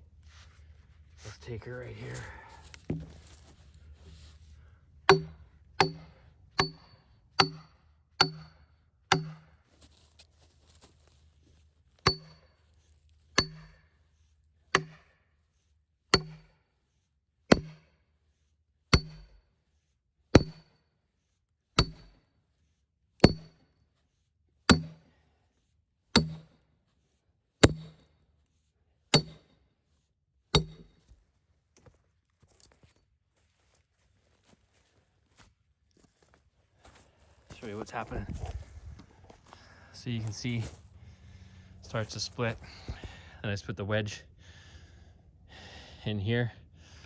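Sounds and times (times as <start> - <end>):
hammer striking steel wedge: 5.1 - 9.6, 12.1 - 12.5, 13.4 - 13.8, 14.7 - 15.2, 16.1 - 16.6, 17.5 - 17.9, 18.9 - 19.4, 20.4 - 20.8, 21.8 - 22.2, 23.2 - 23.6, 24.7 - 25.1, 26.2 - 26.5, 27.6 - 28.0, 29.1 - 29.5, 30.6 - 31.0.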